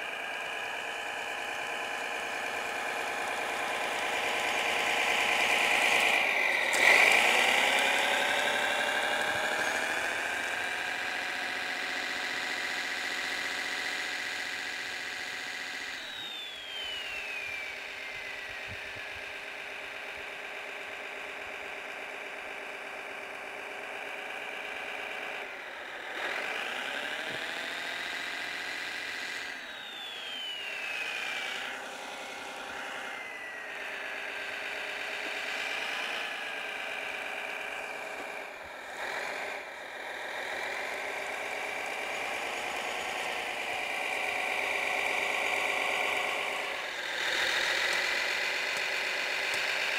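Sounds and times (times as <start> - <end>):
electronic engine sound: 0.0 - 49.9
whines falling in pitch: 15.9 - 18.6, 29.7 - 31.5.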